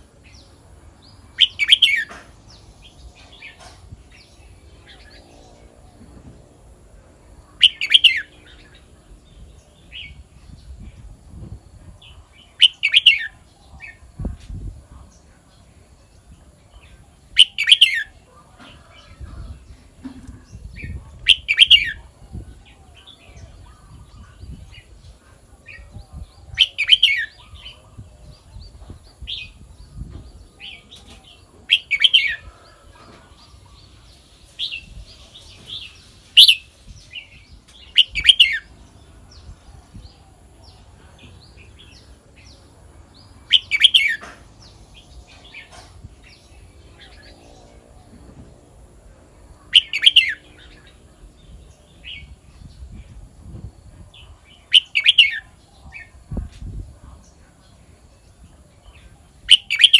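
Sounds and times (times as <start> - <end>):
bird whistling song: 1.4 - 2.2, 7.6 - 8.3, 12.6 - 13.4, 17.4 - 18.1, 20.8 - 23.0, 26.5 - 27.6, 36.4 - 36.7, 37.9 - 38.7, 43.5 - 44.3, 49.7 - 50.5, 54.6 - 55.5, 59.5 - 59.9.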